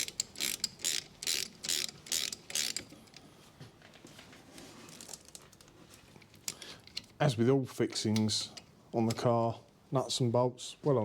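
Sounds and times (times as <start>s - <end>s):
socket ratchet clicking: 0.0s - 2.9s.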